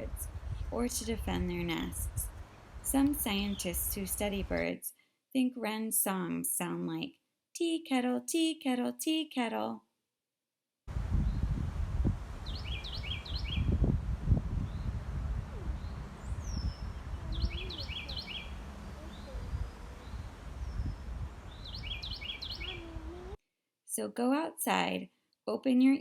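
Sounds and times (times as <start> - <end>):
wren singing rolling song: 0.0 - 4.6, 11.0 - 23.3
low background rumble: 11.7 - 23.1
faint bird chirps: 12.4 - 13.8, 14.6 - 23.4.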